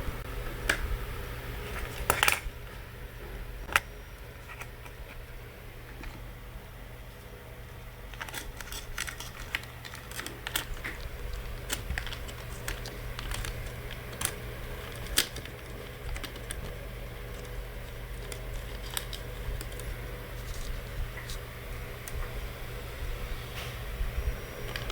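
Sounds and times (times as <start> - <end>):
low hum: 0.0 - 24.9
tools clicking on laptop parts: 8.2 - 16.7.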